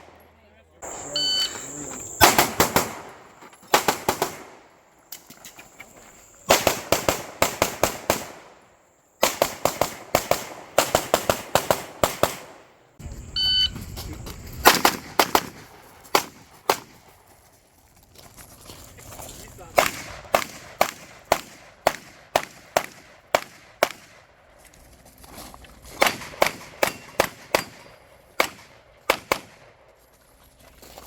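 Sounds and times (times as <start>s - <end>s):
rapid gunshots: 2.2s - 4.6s, 6.5s - 8.6s, 9.2s - 12.6s, 14.6s - 17.0s.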